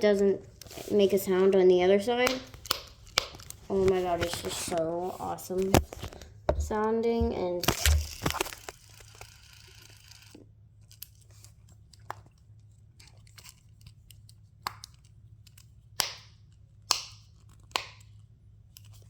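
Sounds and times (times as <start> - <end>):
fidget toy popping: 7.2 - 9.7
fidget toy clicking: 7.6 - 10.4.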